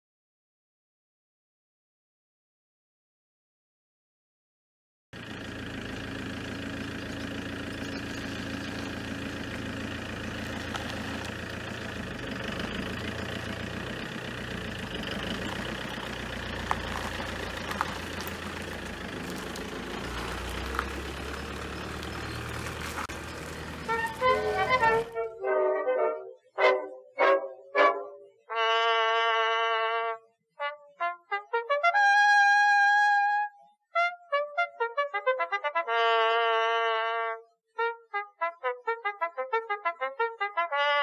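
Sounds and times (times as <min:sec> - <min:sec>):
van engine running: 0:05.2 - 0:25.3.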